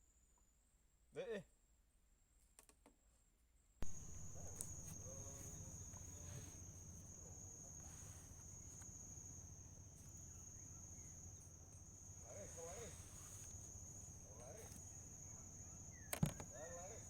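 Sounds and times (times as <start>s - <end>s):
crickets chirring: 3.8s - 17.0s
low steady hum: 3.8s - 17.0s.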